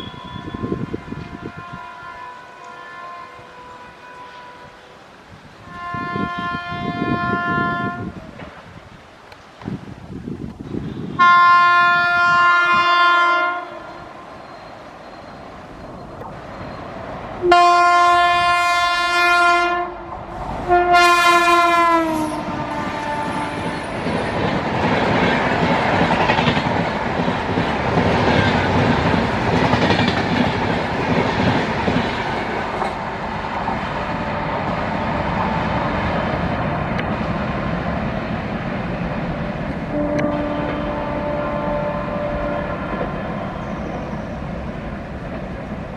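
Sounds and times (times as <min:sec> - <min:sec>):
train horn blasts: 0:00.0 - 0:08.2, 0:10.9 - 0:15.4, 0:17.4 - 0:24.2, 0:34.0 - 0:35.2, 0:39.9 - 0:44.2
train rumbling past: 0:00.0 - 0:45.9
wheels clattering on rails: 0:22.3 - 0:35.4.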